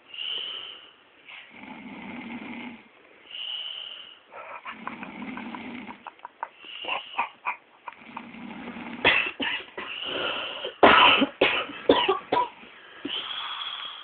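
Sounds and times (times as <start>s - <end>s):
woman snoring: 1.5s - 2.9s, 4.6s - 6.1s, 8.0s - 9.1s
clicking sputtering throat sounds: 4.3s - 9.1s.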